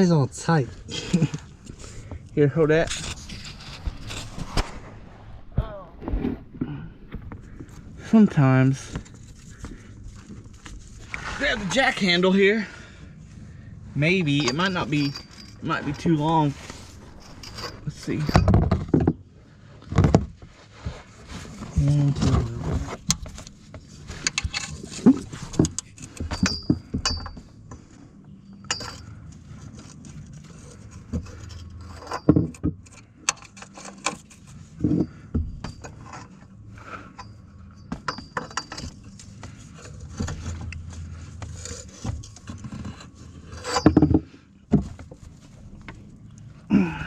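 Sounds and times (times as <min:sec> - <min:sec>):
metal hand tools clinking: 0:14.3 - 0:18.4, 0:37.1 - 0:40.0.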